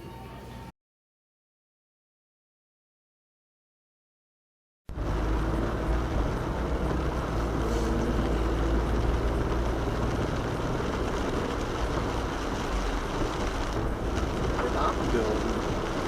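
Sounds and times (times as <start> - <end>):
low vehicle engine rumble: 4.9 - 16.0.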